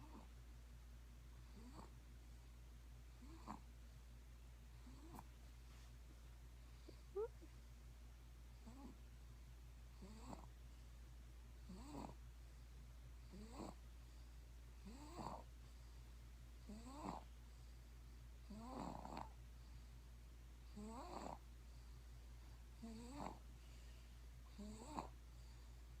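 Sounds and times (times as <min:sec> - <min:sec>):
faint snoring: 0:00.0 - 0:00.3, 0:01.4 - 0:02.0, 0:03.1 - 0:03.7, 0:04.7 - 0:05.3, 0:08.6 - 0:09.0, 0:09.9 - 0:10.6, 0:11.6 - 0:12.2, 0:13.2 - 0:13.8, 0:14.8 - 0:15.5, 0:16.6 - 0:17.3, 0:18.4 - 0:19.4, 0:20.6 - 0:21.5, 0:22.8 - 0:23.5, 0:24.4 - 0:25.8.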